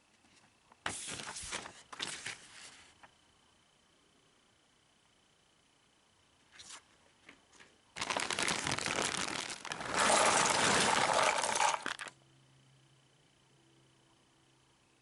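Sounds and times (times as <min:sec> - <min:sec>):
packaging rustling and crackling: 0:08.0 - 0:12.1.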